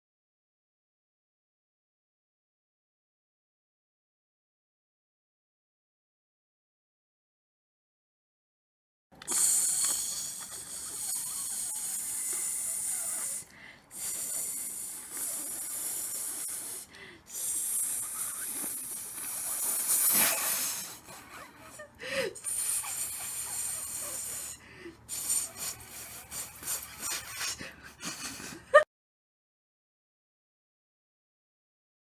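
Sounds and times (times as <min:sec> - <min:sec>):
person making hissing mouth noises: 0:09.2 - 0:28.8.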